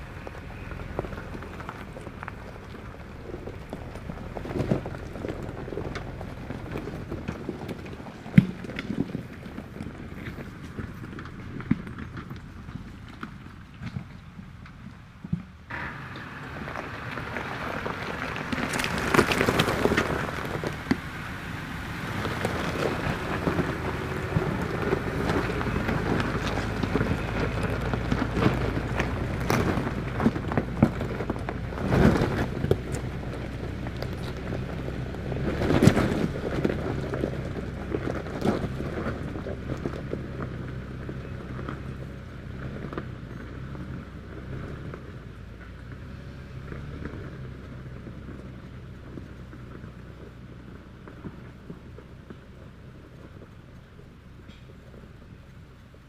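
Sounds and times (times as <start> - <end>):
car engine running at low revs: 0.0 - 56.0
tyres knocking and crunching on rock: 0.2 - 15.6, 16.2 - 21.2, 22.0 - 43.9.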